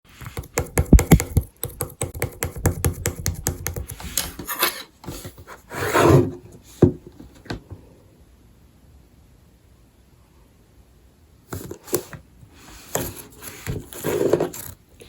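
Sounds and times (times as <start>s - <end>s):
rubbing or scraping noise: 2.2s - 6.4s, 11.6s - 14.8s.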